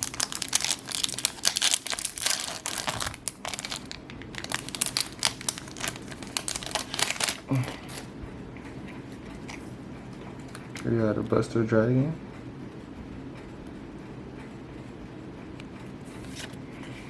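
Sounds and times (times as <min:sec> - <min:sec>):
foil wrapper crinkling and tearing: 0:00.0 - 0:08.1.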